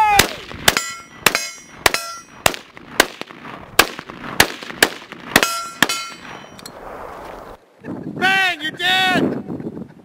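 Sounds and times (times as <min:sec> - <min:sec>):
gunshots: 0:00.1 - 0:06.4
ringing metallic clang: 0:00.7 - 0:02.4, 0:05.4 - 0:06.7.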